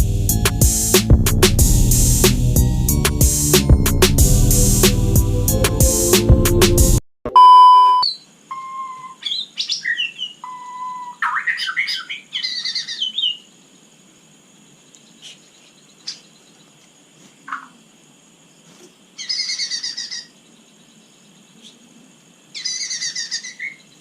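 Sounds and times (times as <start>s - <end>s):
music: 0.0s - 7.0s
loud steady beep tone: 7.3s - 9.0s
bird singing whistled notes: 7.4s - 13.4s
faint bird calls: 8.0s - 13.5s, 14.9s - 17.8s, 18.7s - 24.0s.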